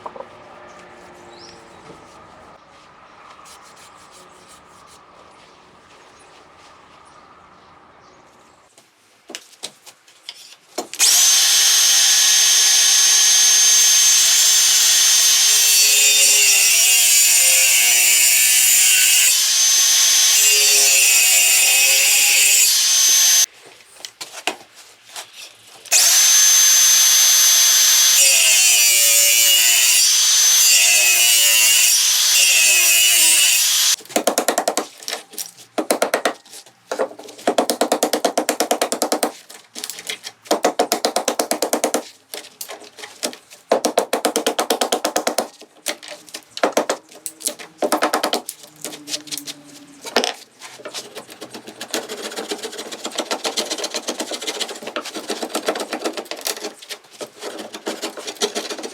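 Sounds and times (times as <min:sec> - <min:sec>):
power tool motor whine: 0:11.0 - 0:23.5, 0:25.9 - 0:34.0.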